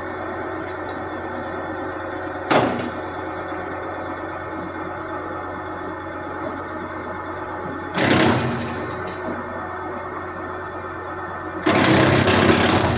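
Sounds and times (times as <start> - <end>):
wood chipper engine running: 0.0 - 12.9.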